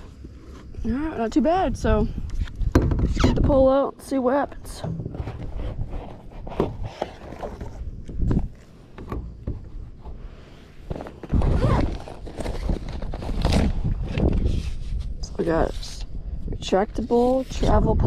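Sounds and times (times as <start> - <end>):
rustling handling noise: 5.0 - 16.0.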